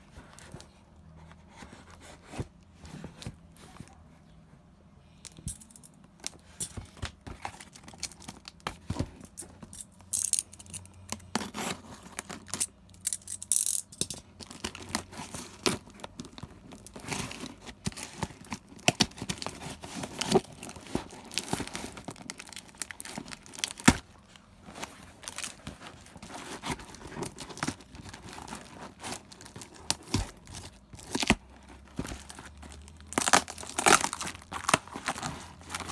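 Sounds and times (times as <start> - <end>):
clicks and taps of handled items: 5.2 - 11.3
wrapping tearing and crinkling: 14.4 - 35.9.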